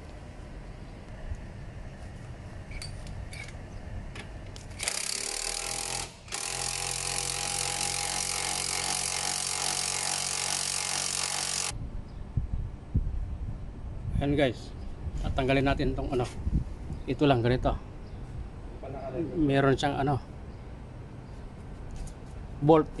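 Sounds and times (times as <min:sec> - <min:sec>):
power tool running: 0:04.7 - 0:11.8.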